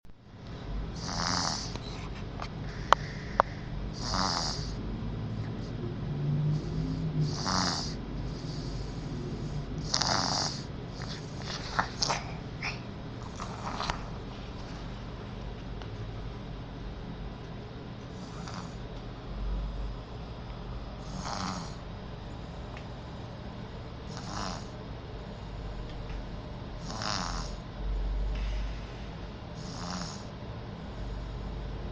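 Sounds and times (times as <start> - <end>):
steady low hum: 0.0 - 31.9
rasping snores: 1.0 - 1.9, 2.7 - 4.8, 6.2 - 14.0, 18.2 - 18.8, 21.0 - 21.8, 24.1 - 24.8, 26.8 - 27.6, 29.6 - 30.3.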